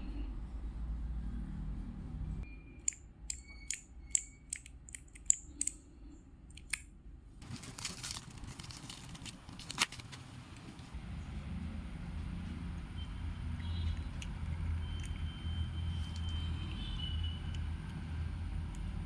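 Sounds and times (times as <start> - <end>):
handling noise: 7.4 - 11.0.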